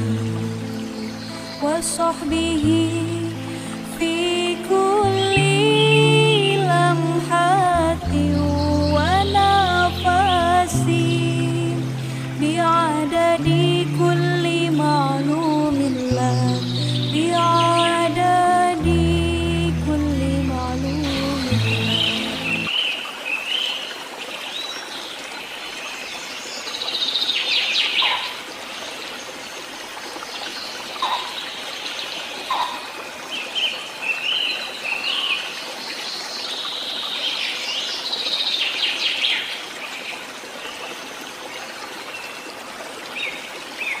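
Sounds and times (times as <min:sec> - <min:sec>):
running water hiss: 0:00.0 - 0:44.0
birds chirping and singing: 0:14.8 - 0:18.9, 0:20.4 - 0:22.8.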